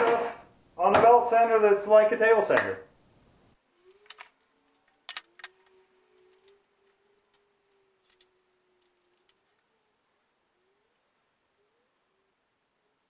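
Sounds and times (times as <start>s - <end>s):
faint steady tone: 2.9s - 13.0s.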